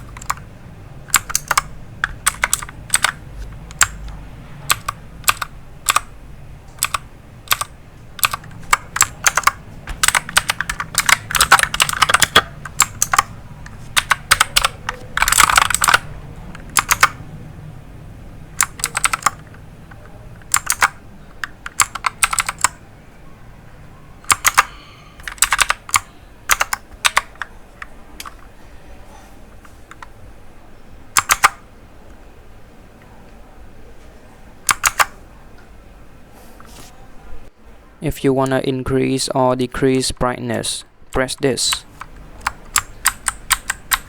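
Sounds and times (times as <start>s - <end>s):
mechanical keyboard clicking: 0.0s - 17.2s, 18.6s - 22.8s, 24.2s - 28.4s, 29.9s - 30.2s, 31.1s - 31.6s, 34.6s - 35.2s, 41.7s - 44.0s.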